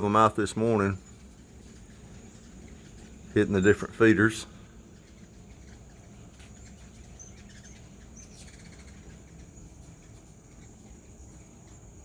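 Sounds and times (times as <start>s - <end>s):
hummingbirds chirping: 0.0s - 12.0s
insects buzzing: 0.0s - 12.0s.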